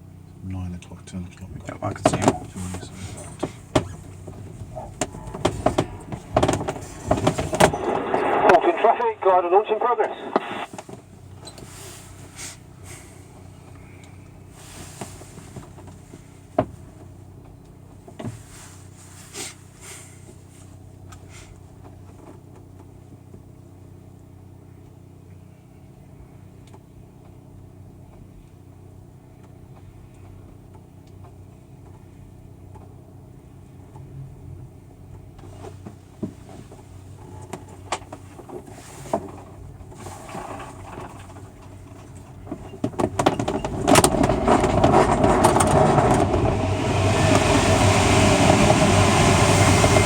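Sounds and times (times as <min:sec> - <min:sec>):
cockpit air rush and hum: 0:00.4 - 0:17.2, 0:43.1 - 0:50.0
sharp knocks: 0:02.0 - 0:08.2.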